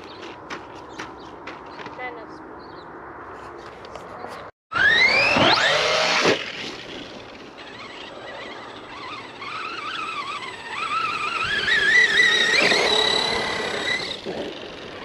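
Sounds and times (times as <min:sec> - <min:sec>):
electric motor whining: 0:04.7 - 0:15.0.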